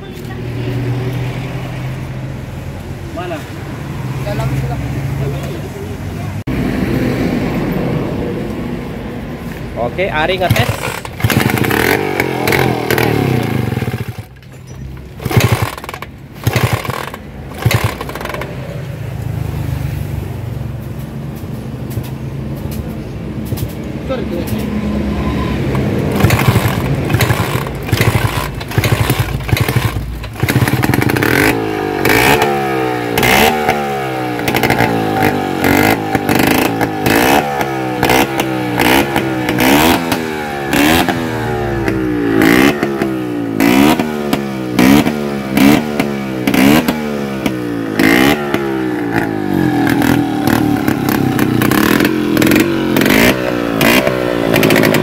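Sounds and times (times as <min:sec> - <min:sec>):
scooter engine revving: 0:10.2 - 0:20.4, 0:24.3 - 0:55.0.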